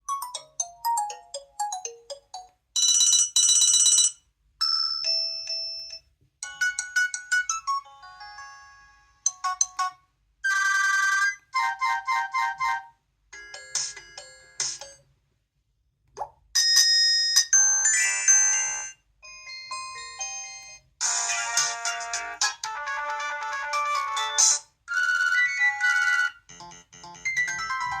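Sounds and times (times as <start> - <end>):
phone ringtone melodies: 0.1 - 5.6, 6.4 - 12.8, 17.5 - 28.0
chimes: 16.6 - 20.9.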